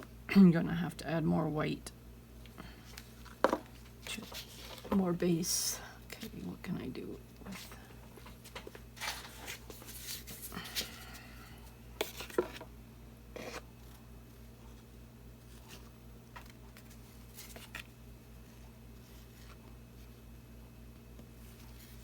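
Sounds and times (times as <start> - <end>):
paint cups scraping and rustling: 2.9 - 5.0, 12.0 - 12.7, 13.3 - 14.0.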